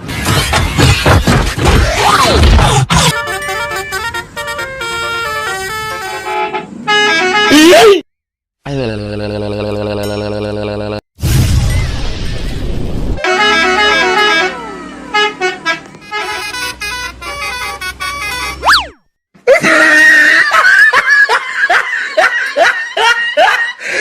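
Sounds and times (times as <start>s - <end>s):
bus horn playing a tune: 3.1s - 7.9s, 13.2s - 18.7s.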